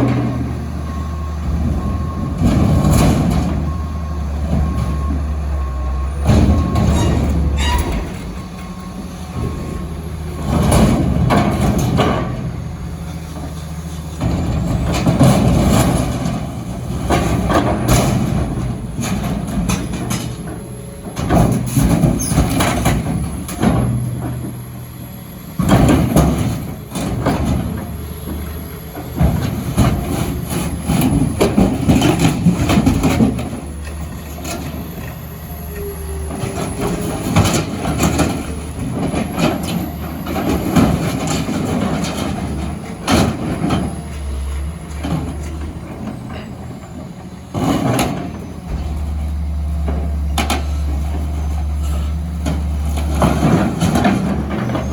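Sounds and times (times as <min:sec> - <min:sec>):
reversing beeper: 0:00.0 - 0:11.2
diesel engine under load: 0:00.0 - 0:54.9
metal crunching and banging: 0:00.0 - 0:54.9.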